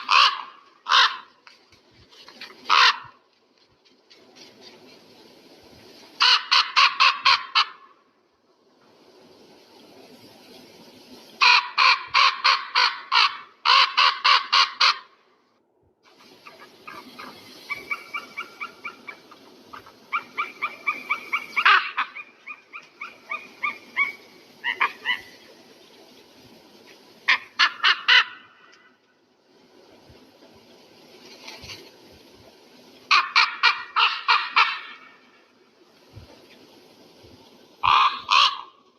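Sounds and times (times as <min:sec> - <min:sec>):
quiet chattering calls: 0:16.1 - 0:26.0
eagle calling: 0:16.2 - 0:25.5, 0:37.8 - 0:38.8.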